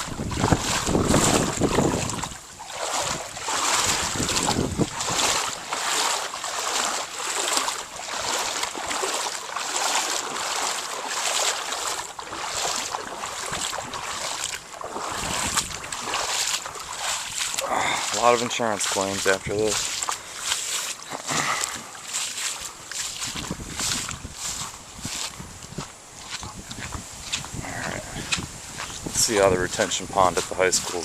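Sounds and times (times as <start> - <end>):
wind on microphone: 0.0 - 5.7, 12.8 - 18.0, 22.9 - 31.0
legs wading through water: 0.0 - 31.0.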